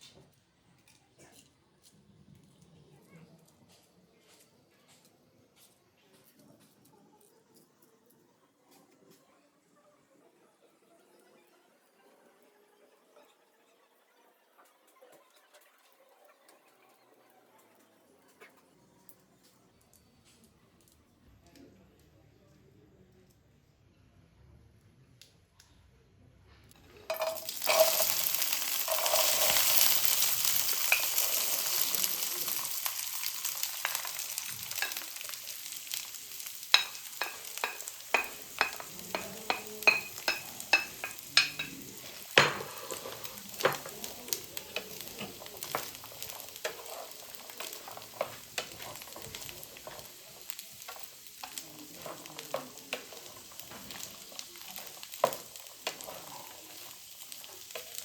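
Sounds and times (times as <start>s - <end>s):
utensil scraping a pan: 27.1s - 35.8s, 36.6s - 58.0s
food sizzling in oiled pan: 27.1s - 58.0s.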